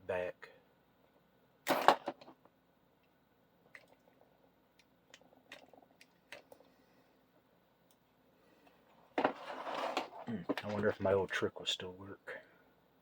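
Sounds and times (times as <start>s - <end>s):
rustling clatter: 9.1s - 11.0s.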